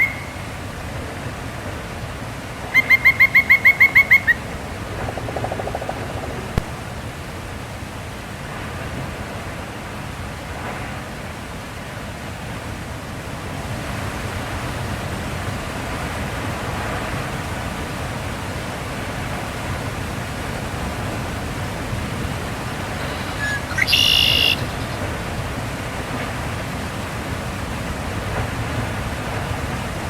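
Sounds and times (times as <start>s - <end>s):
high-pitched bird call: 0.0s - 0.5s, 2.7s - 4.4s, 22.8s - 25.1s
steady rushing noise: 4.2s - 11.6s, 13.4s - 30.0s.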